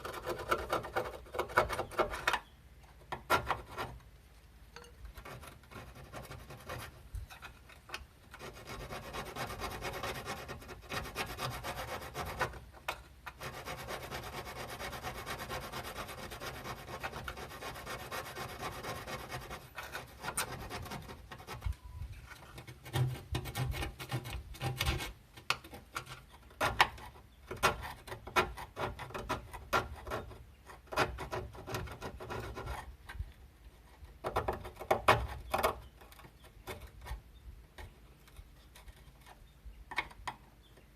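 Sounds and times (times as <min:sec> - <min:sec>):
hand sanding metal panel: 0:05.2 - 0:07.0, 0:08.3 - 0:12.7, 0:13.3 - 0:21.7.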